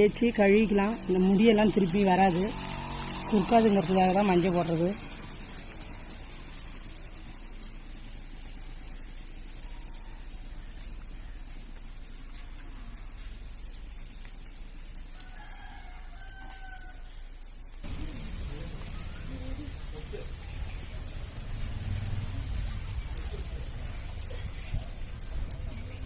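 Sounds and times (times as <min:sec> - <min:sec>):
small birds chirping: 0:00.0 - 0:26.0
rooster crowing: 0:15.2 - 0:17.2
steady hiss: 0:17.8 - 0:26.0.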